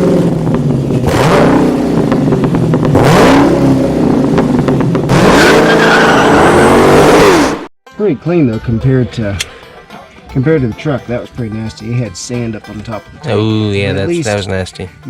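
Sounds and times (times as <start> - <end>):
car engine revving: 0.0 - 7.7.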